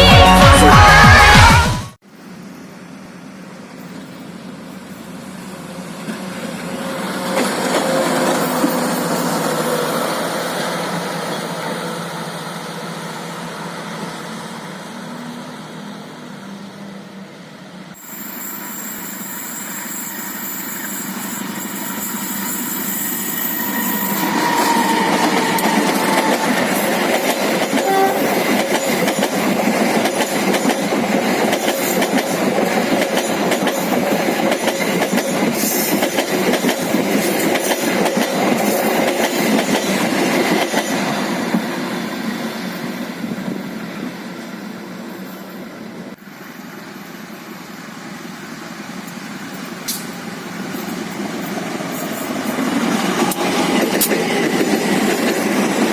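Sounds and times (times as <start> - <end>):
train passing with wheels clattering: 2.1 - 55.9
train horn: 27.7 - 28.5.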